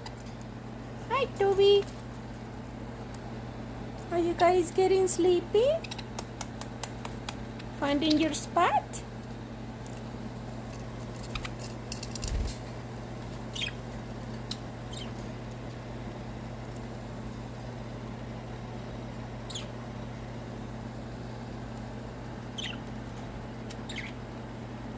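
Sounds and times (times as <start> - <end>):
steady low hum: 0.0 - 24.9
budgerigars chirping: 13.5 - 13.8, 14.9 - 15.2, 19.5 - 19.7, 22.5 - 22.8, 23.9 - 24.2.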